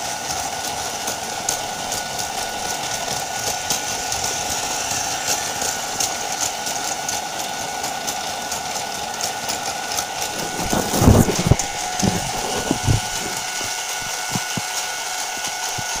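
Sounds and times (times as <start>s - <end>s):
toy train motor whirring: 0.0s - 16.0s.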